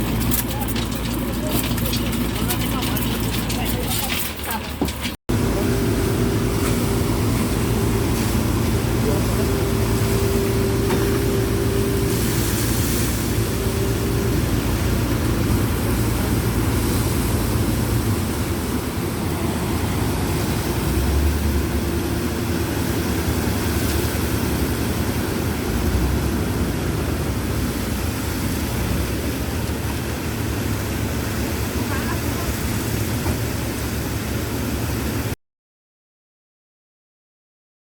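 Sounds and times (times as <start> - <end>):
heavy machine engine running: 0.0 - 35.4.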